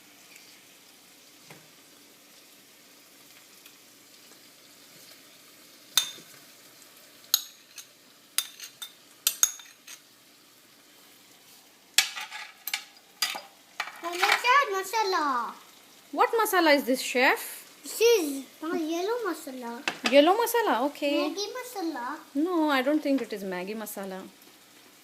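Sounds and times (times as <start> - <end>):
vegetables sizzling in oil: 0.0 - 25.0
spoon scraping pan: 7.3 - 10.1.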